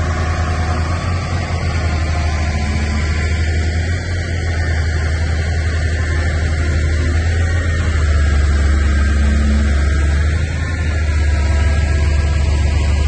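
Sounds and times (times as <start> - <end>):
heavy engine rumbling: 0.0 - 13.0.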